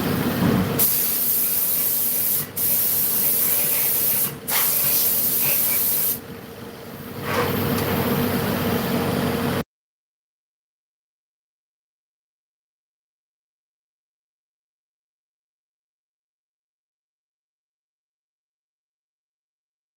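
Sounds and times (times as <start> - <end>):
loud hissing spray: 0.8 - 6.2.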